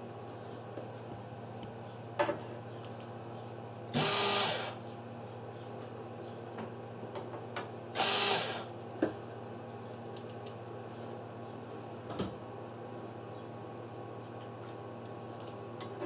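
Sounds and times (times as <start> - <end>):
welder humming: 3.9 - 4.8, 7.9 - 8.7.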